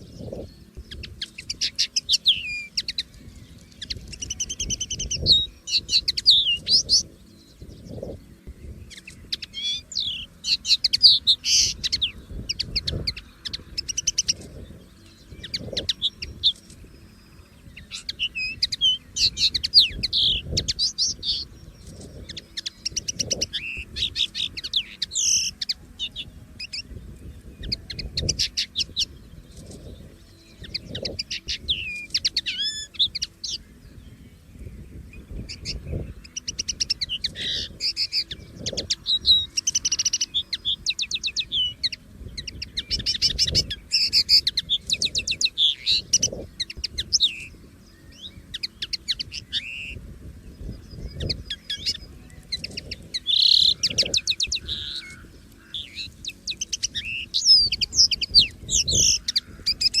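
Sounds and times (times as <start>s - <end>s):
bird twittering and trilling: 0.0s - 60.0s.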